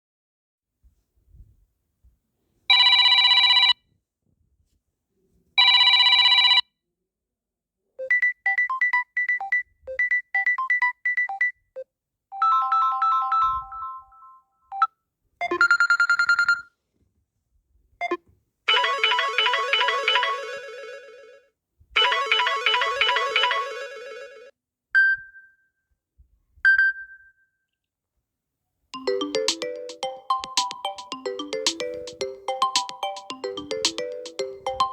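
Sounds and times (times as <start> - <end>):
electronic phone ringing: 2.7 - 3.7, 14.8 - 16.7, 18.7 - 21.4, 22.0 - 24.5, 29.0 - 34.9.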